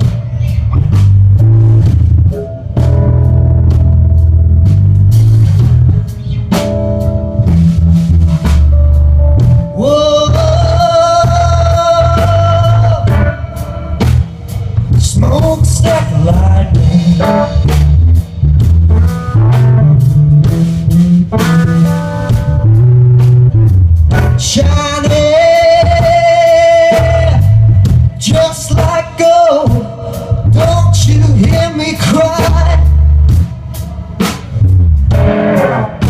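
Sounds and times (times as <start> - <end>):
blues band playing: 0.0 - 36.0.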